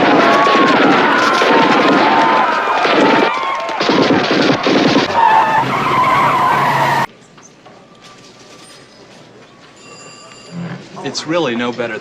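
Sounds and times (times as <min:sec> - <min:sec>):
tires squealing and skidding: 0:04.9 - 0:07.1.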